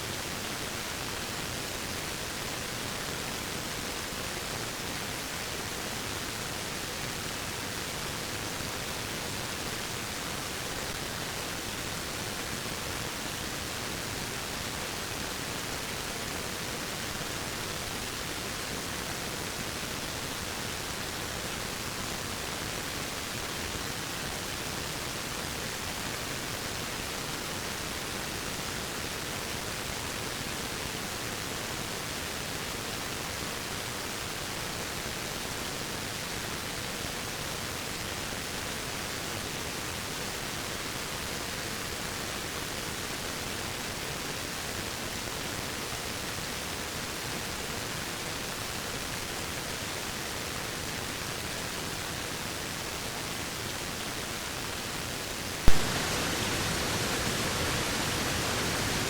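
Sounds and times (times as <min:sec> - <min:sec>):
waterfall rushing: 0:55.6 - 0:59.0.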